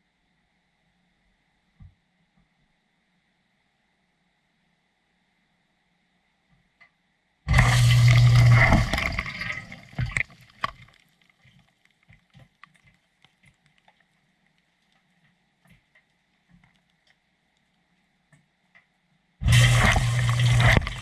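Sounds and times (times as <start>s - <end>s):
low hum: 7.5s - 10.8s, 19.4s - 21.0s
water gushing: 7.5s - 10.9s, 19.4s - 21.0s
faint drips and ticks: 7.6s - 19.0s.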